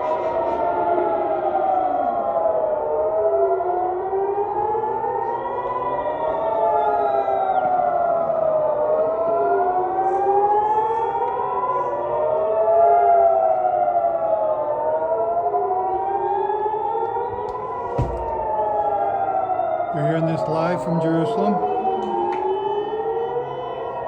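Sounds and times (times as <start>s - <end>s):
air raid sirens wailing: 0.1s - 24.0s
low thump: 17.4s - 18.9s.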